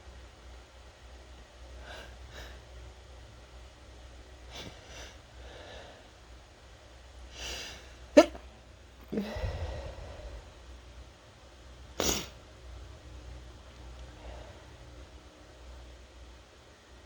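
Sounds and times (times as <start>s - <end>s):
person sneezing: 8.2s - 8.5s, 12.0s - 12.4s
loud sniffle: 12.0s - 12.4s.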